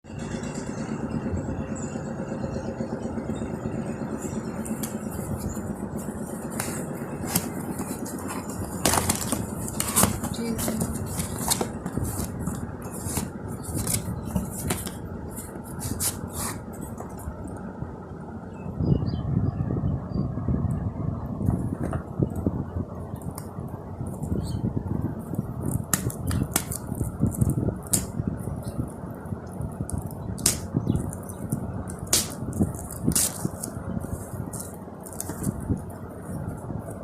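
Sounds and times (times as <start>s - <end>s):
low background hum: 0.1s - 37.0s
packaging clicks and scrapes: 4.5s - 17.3s, 29.9s - 37.0s.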